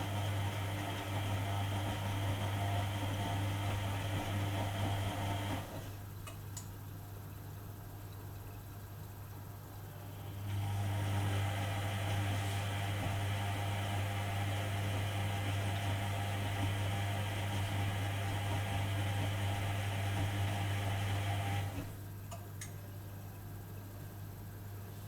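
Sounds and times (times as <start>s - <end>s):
water rushing in washing machine: 0.0s - 6.0s, 10.1s - 22.0s
washing machine humming: 0.0s - 25.0s.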